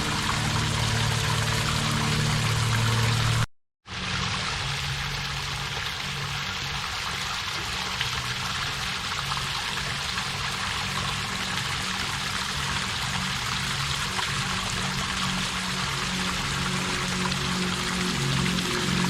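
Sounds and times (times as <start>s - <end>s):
waterfall rushing: 0.0s - 3.5s, 14.4s - 19.0s.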